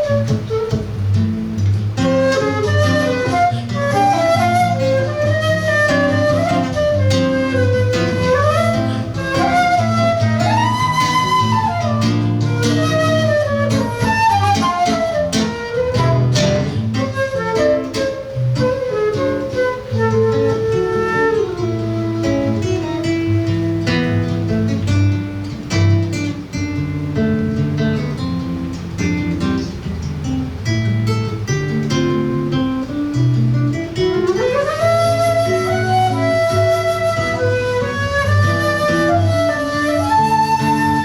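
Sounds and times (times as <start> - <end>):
flute melody: 0.0 - 29.8, 30.9 - 41.0
plucked acoustic guitar: 0.0 - 41.0.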